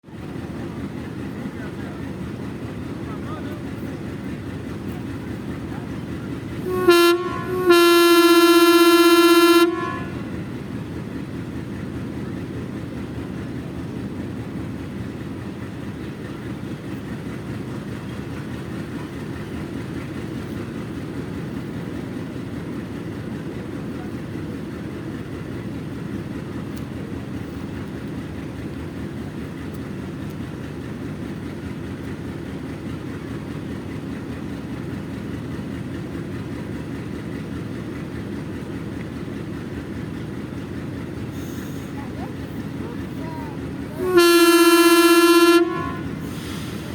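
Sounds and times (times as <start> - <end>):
locomotive running rumble: 0.0 - 46.9
locomotive whistle: 6.6 - 10.4, 43.9 - 46.9.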